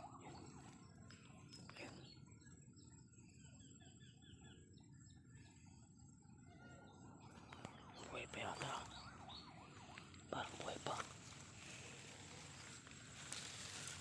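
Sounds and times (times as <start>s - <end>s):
soft whispering: 0.0s - 3.4s, 7.3s - 14.0s
small birds chirping: 0.0s - 14.0s
rustling: 10.7s - 14.0s.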